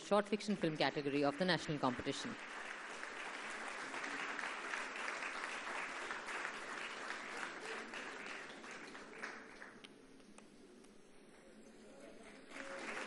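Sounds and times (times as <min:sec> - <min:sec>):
audience applauding: 0:00.7 - 0:09.9, 0:12.2 - 0:13.0.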